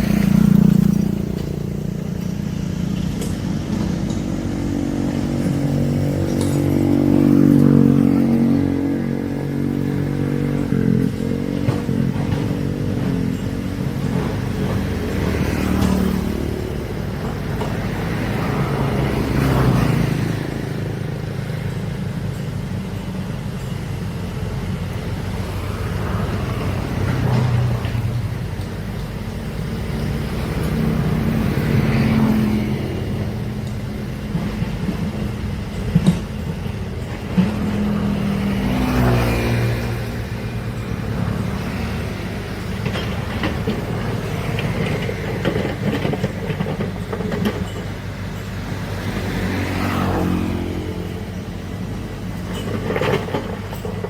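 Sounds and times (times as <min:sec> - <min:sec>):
diesel engine revving: 0:00.0 - 0:54.0.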